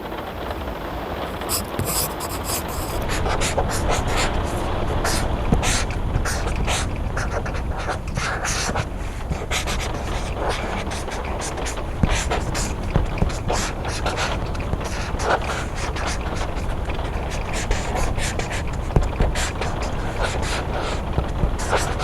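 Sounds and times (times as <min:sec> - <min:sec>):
steady rain: 0:00.0 - 0:22.0
pencil scratching on paper: 0:01.3 - 0:22.0.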